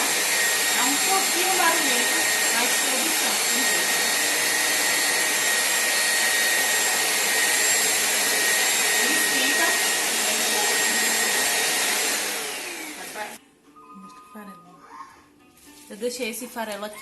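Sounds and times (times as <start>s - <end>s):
vacuum cleaner running: 0.0s - 13.4s.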